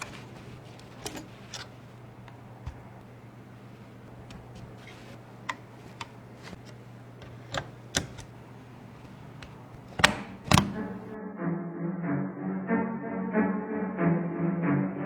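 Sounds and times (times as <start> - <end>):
computer parts clicking and tapping: 0.0 - 11.2
low steady hum: 0.0 - 11.2.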